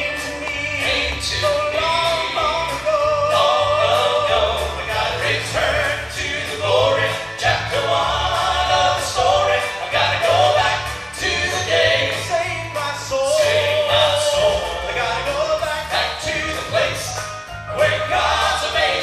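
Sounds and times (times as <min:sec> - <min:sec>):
gospel vocal group singing in harmony: 0:00.0 - 0:19.0
instrumental accompaniment with bass: 0:00.0 - 0:19.0.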